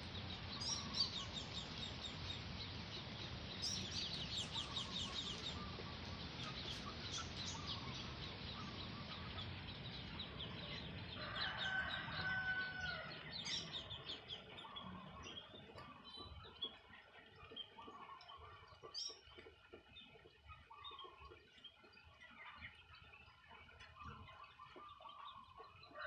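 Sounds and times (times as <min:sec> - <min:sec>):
birds chirping: 0:00.0 - 0:26.0
steady low background hum: 0:00.0 - 0:26.0
low bird call: 0:03.6 - 0:09.6.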